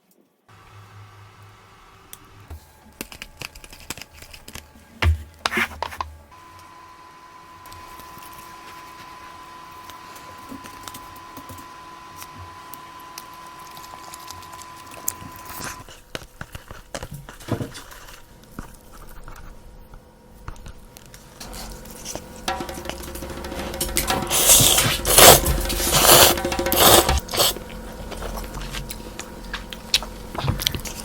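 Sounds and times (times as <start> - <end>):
faint electrical whine: 0.0 - 31.0
eating sounds: 24.2 - 31.0.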